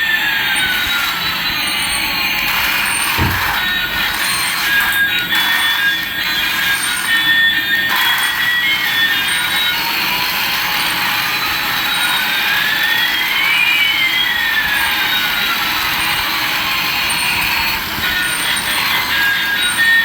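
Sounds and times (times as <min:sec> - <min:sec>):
electronic toy hiss: 0:14.5 - 0:20.0.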